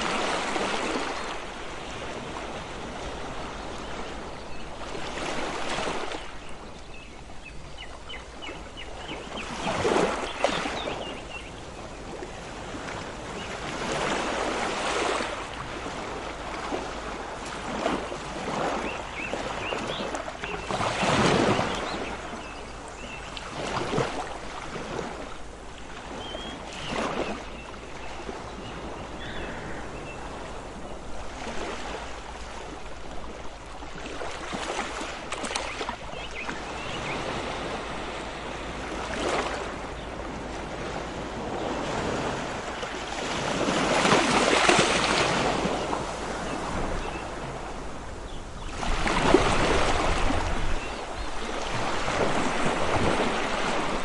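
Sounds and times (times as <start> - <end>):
ocean waves washing in: 0.0 - 4.1.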